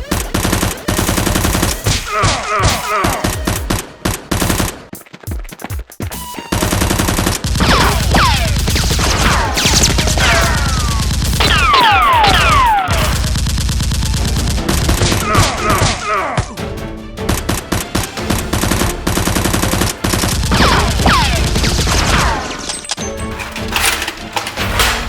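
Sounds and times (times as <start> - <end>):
automatic gunfire: 0.0 - 2.1, 6.5 - 16.0, 17.3 - 22.7
background music: 0.0 - 25.0.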